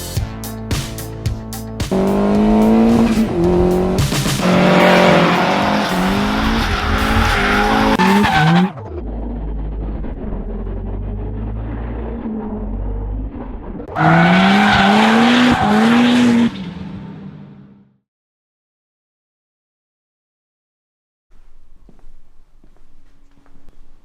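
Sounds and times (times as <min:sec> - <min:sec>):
music: 0:00.0 - 0:09.0
car engine revving: 0:01.8 - 0:17.9
tyre squeal: 0:04.5 - 0:08.8
low steady rumble: 0:08.8 - 0:13.9.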